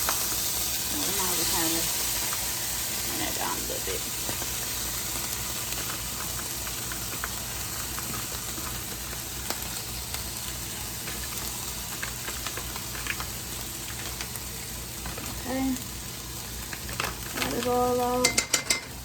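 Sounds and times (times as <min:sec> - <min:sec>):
fish sizzling in a frying pan: 0:00.0 - 0:19.0
crackles and light clicks: 0:02.2 - 0:02.5, 0:04.2 - 0:18.5.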